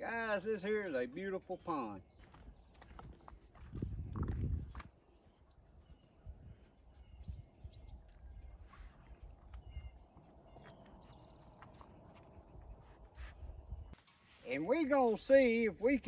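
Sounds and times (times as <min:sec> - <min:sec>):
faint bird chirps: 0:05.2 - 0:14.4.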